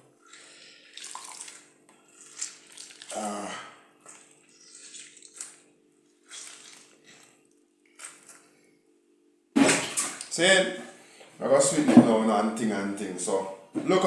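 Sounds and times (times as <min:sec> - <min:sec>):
water splashing in sink: 0:00.3 - 0:03.3, 0:09.6 - 0:11.0.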